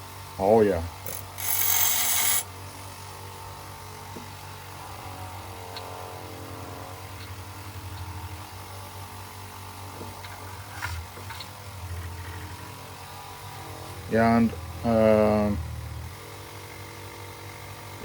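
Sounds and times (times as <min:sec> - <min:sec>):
bench grinder motor humming: 0:00.9 - 0:04.0.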